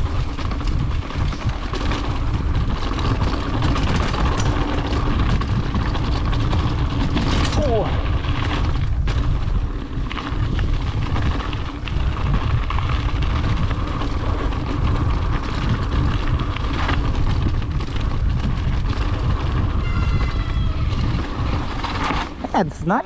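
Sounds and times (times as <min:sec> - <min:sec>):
bike rattling over rough ground: 0:00.0 - 0:23.0
wind rumble on microphone: 0:00.0 - 0:23.0
high squeal: 0:19.8 - 0:21.0.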